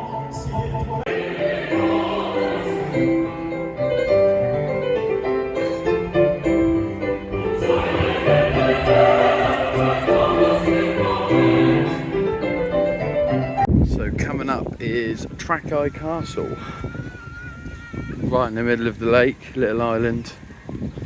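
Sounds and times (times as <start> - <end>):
operatic choir singing: 0.0 - 13.5.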